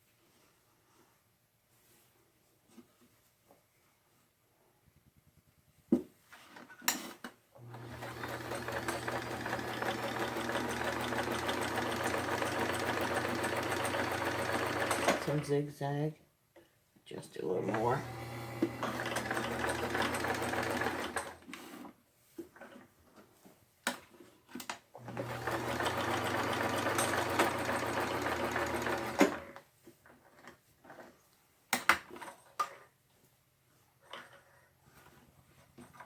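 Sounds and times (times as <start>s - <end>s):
sewing machine stitching: 7.6s - 15.6s, 17.6s - 21.5s, 25.0s - 29.6s.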